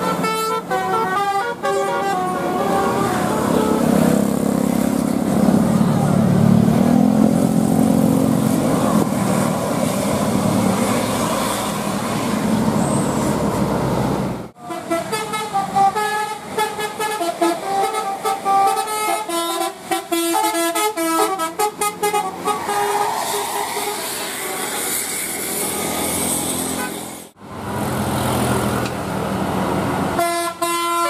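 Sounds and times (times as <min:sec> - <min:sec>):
bus multi-tone air horn tune: 0:00.0 - 0:04.2, 0:14.6 - 0:24.7, 0:26.6 - 0:27.2, 0:30.1 - 0:31.0
engine and traffic noise: 0:00.0 - 0:31.0.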